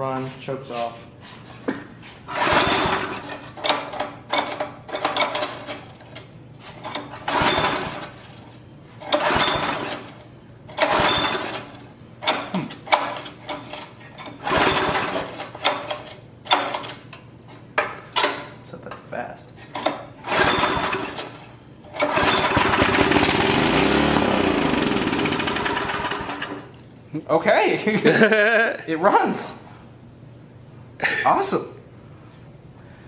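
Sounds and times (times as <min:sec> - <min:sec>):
engine being pull-started: 0:02.3 - 0:05.8, 0:06.9 - 0:08.4, 0:09.0 - 0:17.0, 0:19.8 - 0:26.8.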